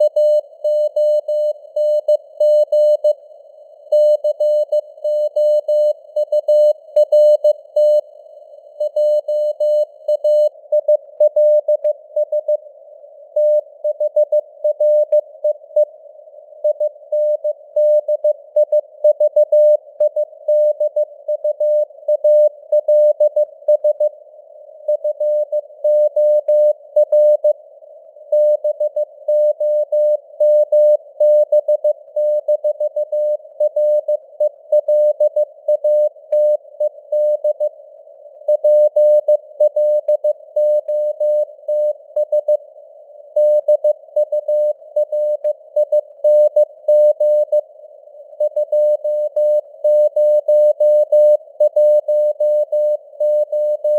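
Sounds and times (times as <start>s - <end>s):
morse code beeps: 4.0s - 8.0s, 8.8s - 12.6s, 24.9s - 27.6s, 28.4s - 37.7s, 38.5s - 42.6s, 43.3s - 47.7s, 48.4s - 53.9s.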